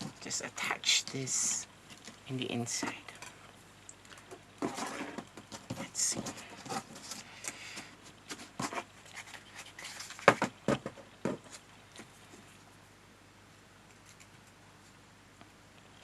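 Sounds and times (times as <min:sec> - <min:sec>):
faint room noise: 0:00.0 - 0:16.0
cardstock rustling: 0:04.2 - 0:12.4.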